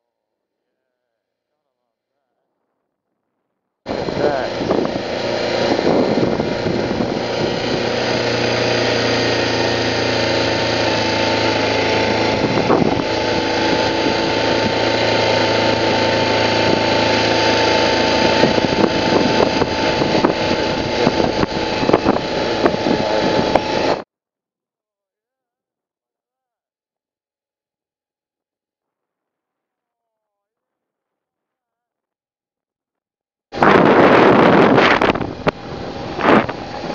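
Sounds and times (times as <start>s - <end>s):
wind noise on microphone: 3.9s - 24.0s, 33.6s - 36.9s
motorcycle engine running: 3.9s - 24.1s, 33.6s - 36.9s.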